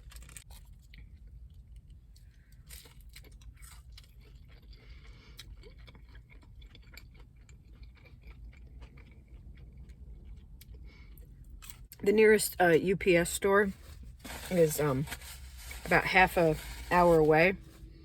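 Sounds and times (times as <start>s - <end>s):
low steady hum: 0.0s - 18.0s
chewing with mouth clicks: 0.4s - 12.0s.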